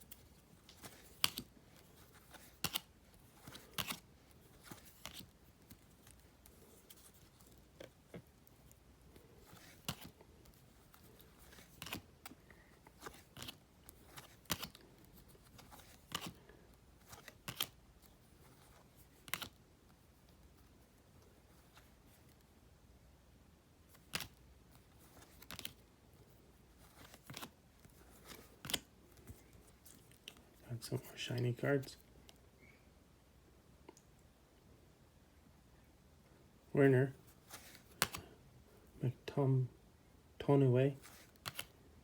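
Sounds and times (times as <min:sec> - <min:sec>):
trading cards snapping: 0:00.1 - 0:01.5, 0:02.3 - 0:04.0, 0:11.5 - 0:12.4, 0:13.0 - 0:14.8, 0:17.1 - 0:17.8, 0:19.2 - 0:19.5, 0:24.0 - 0:24.4, 0:25.2 - 0:25.8, 0:37.6 - 0:38.2, 0:41.4 - 0:41.7.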